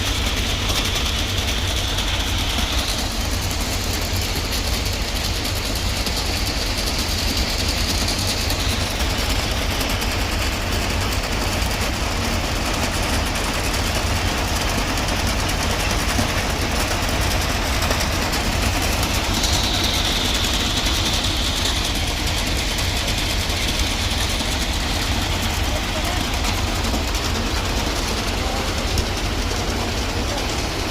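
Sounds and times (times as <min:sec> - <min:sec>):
deep engine rumble: 0:00.0 - 0:30.9
high hiss: 0:17.4 - 0:28.4.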